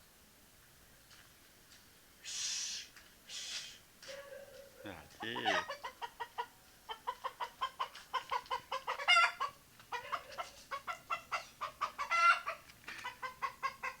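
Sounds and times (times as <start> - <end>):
rooster clucking: 4.1 - 14.0.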